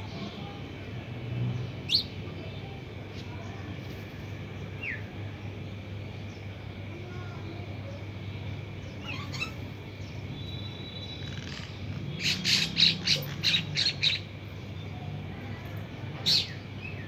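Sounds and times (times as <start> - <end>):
bird harsh calls: 9.0 - 9.8, 10.8 - 14.3, 16.2 - 16.6.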